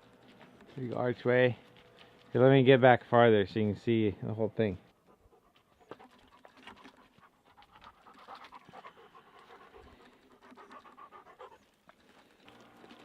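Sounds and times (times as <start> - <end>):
dog panting: 4.9 - 12.3.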